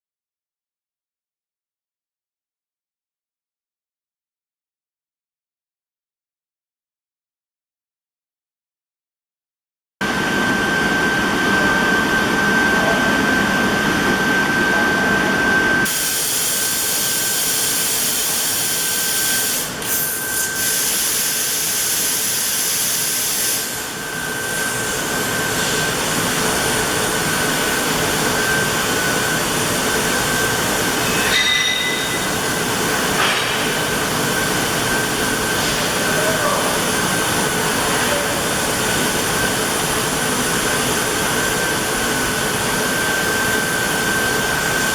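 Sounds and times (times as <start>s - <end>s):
high machine whine: 10.0s - 44.9s
laser cutting machine hissing: 15.8s - 44.9s.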